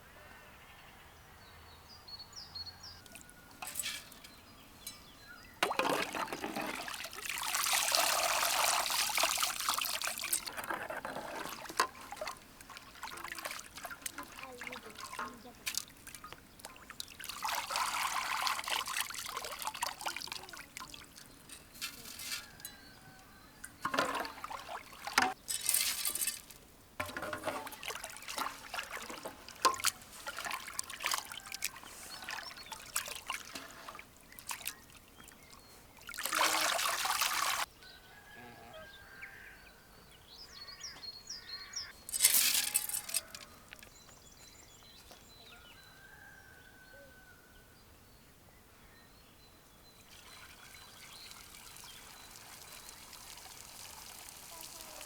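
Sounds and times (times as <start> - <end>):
liquid pouring: 5.6 - 10.7, 11.3 - 22.5, 36.1 - 37.7, 50.1 - 55.0
faint bird chirps: 43.9 - 47.8.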